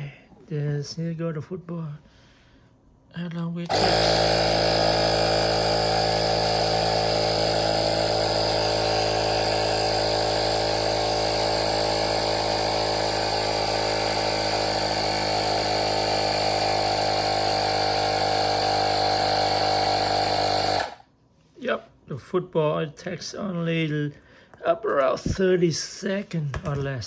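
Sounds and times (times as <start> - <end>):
air compressor running: 3.7 - 21.0.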